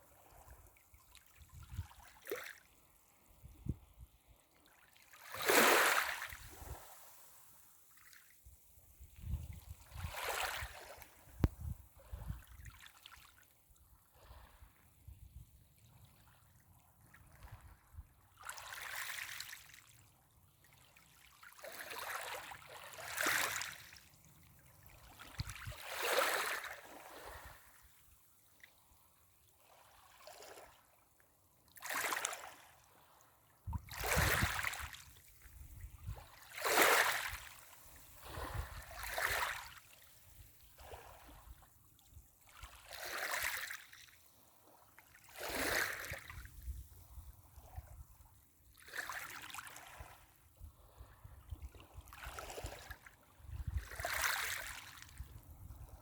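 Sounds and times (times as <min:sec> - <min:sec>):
small waves washing up: 0:00.1 - 0:08.4, 0:09.6 - 0:13.4, 0:21.3 - 0:24.1, 0:24.8 - 0:28.0, 0:31.8 - 0:41.7, 0:42.3 - 0:47.9, 0:48.7 - 0:53.0, 0:53.7 - 0:56.0.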